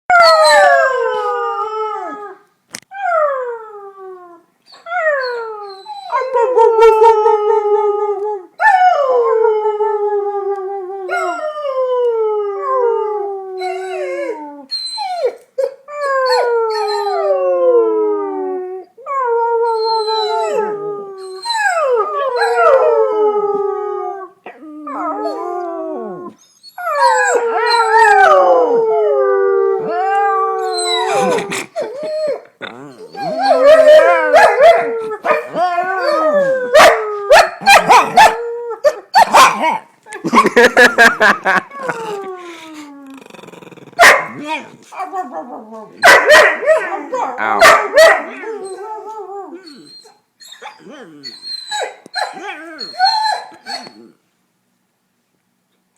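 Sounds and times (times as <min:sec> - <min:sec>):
dogs howling: 0:20.0 - 0:39.8.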